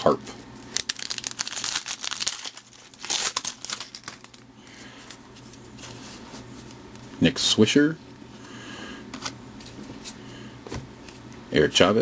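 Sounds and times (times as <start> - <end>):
cards crinkling and rustling: 0.6 - 6.0.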